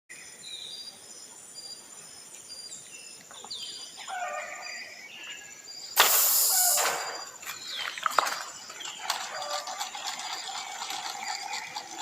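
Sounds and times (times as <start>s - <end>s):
birds chirping: 0.1s - 12.0s
insect drone: 0.2s - 12.0s
loud burst of noise: 6.0s - 7.3s.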